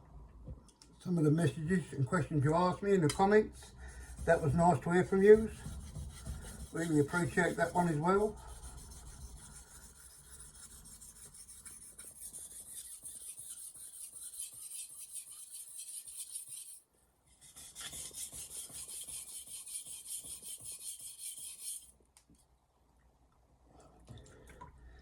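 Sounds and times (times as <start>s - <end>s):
knife scraping on whetstone: 3.1s - 16.8s, 17.4s - 21.9s.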